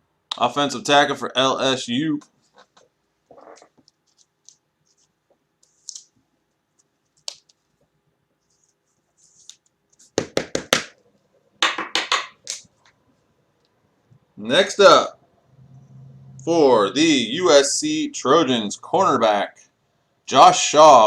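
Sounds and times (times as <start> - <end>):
cards and plastic sleeves handled: 2.5 - 10.3.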